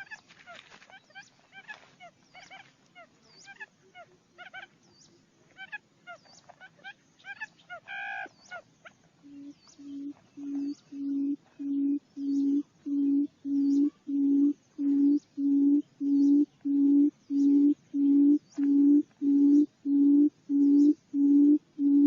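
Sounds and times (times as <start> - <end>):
high chirping bird calls: 0.9 - 22.0
low hooting bird call: 9.2 - 22.0.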